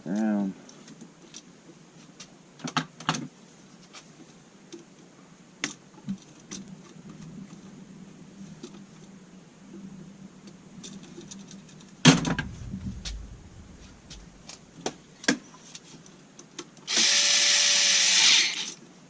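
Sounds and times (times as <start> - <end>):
faint steady hum: 3.2 - 18.0.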